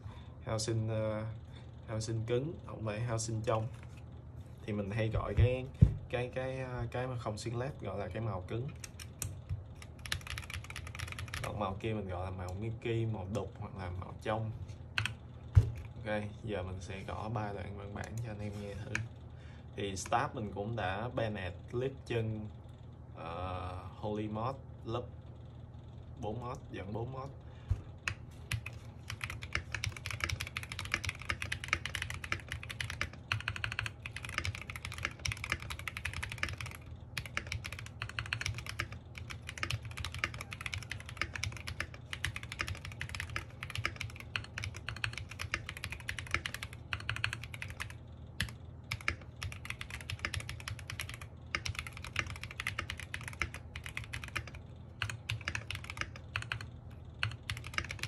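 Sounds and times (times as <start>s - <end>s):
fast typing on mechanical keyboard: 8.7s - 11.9s, 15.0s - 15.2s, 28.1s - 58.0s.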